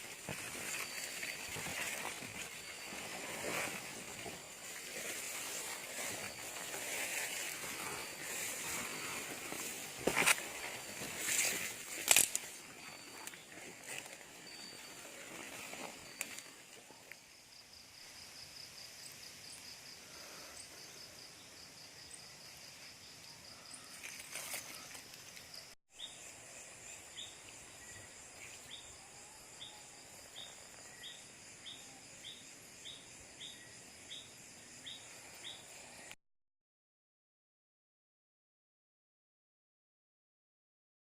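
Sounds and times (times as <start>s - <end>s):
rustles: 0.0s - 17.3s, 23.7s - 29.0s
insect chirping: 0.0s - 36.2s
insects trilling: 0.0s - 36.2s.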